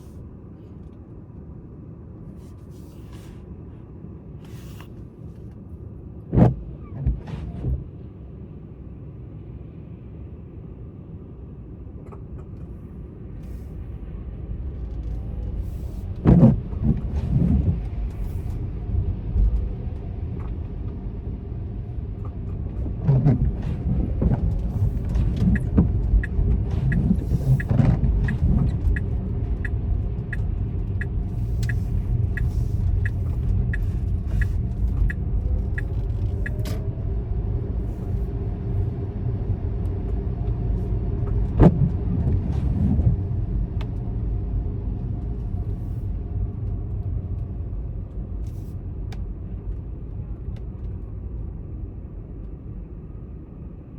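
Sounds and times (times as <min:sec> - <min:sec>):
engine and road rumble: 0:00.0 - 0:53.9.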